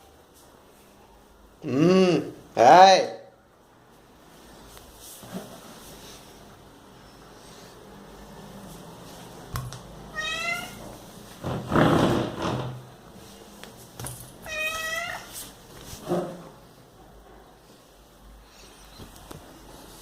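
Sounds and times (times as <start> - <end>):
cat meowing: 10.1 - 10.9, 14.4 - 15.3.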